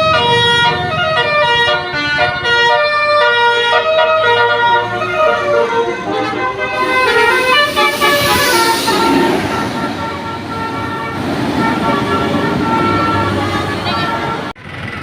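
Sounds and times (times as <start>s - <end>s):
bus horn playing musical notes: 0.0s - 14.6s
broad rush of noise: 6.3s - 14.4s.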